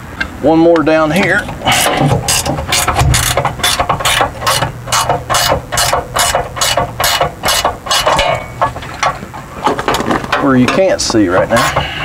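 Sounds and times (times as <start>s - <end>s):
ratchet wrench clicking: 1.7s - 8.7s.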